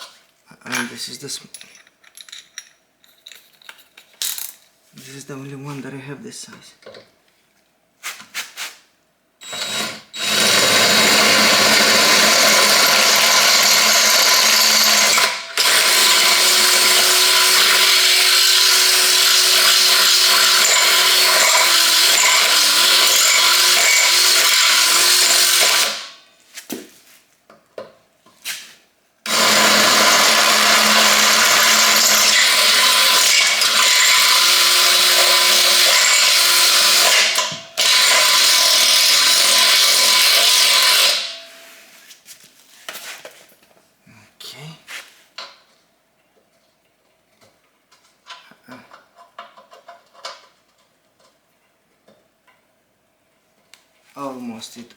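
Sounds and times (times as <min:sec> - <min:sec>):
electric drill running: 0:09.4 - 0:26.1, 0:29.3 - 0:41.3.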